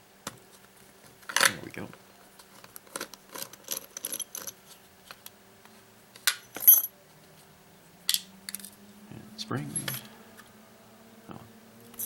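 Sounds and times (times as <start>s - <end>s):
metal lock parts clinking: 2.6s - 4.6s, 6.3s - 6.9s, 9.7s - 10.1s
ringing metallic clinks: 9.7s - 10.2s.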